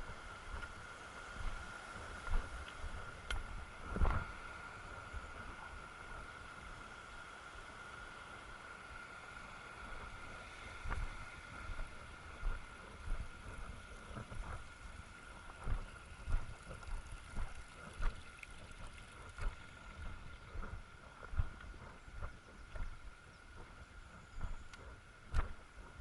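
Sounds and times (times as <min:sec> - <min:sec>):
footsteps on a trail: 0:00.0 - 0:04.4, 0:10.7 - 0:26.0
mountain stream rushing: 0:00.0 - 0:21.8.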